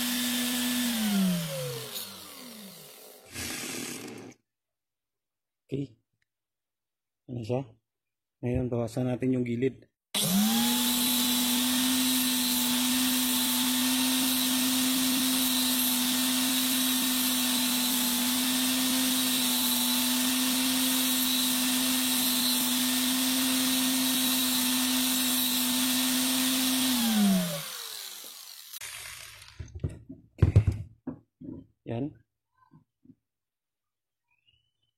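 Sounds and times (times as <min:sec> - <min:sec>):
electric sander grinding steel: 0:00.0 - 0:04.3, 0:10.2 - 0:29.6.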